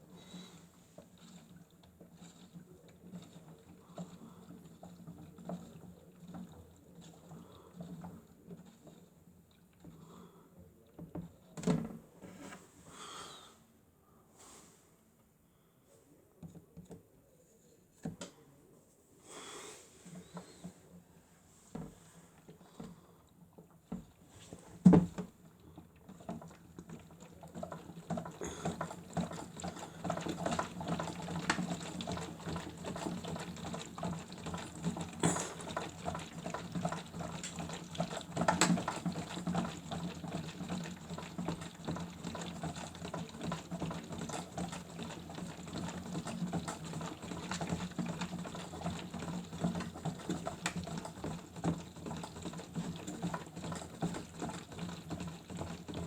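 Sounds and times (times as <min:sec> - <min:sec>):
toy washing machine motor humming: 0:00.0 - 0:10.0, 0:21.8 - 0:56.0
water splashing in drum: 0:23.6 - 0:56.0.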